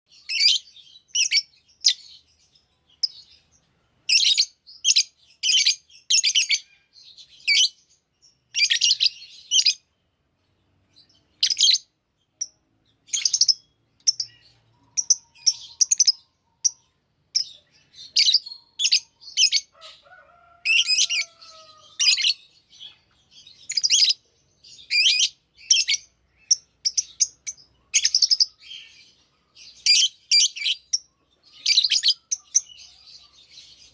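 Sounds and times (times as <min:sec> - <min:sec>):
lovebirds chirping: 0:00.1 - 0:33.9.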